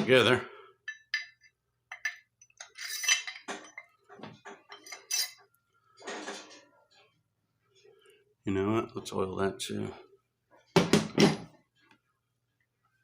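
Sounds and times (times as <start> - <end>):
metal wrench parts clinking: 0.9 - 3.9, 4.7 - 5.4.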